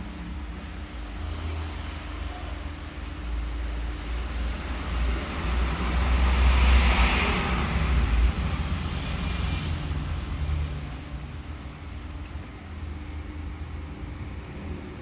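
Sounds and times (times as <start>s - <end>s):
vehicle passing by: 4.1s - 11.8s.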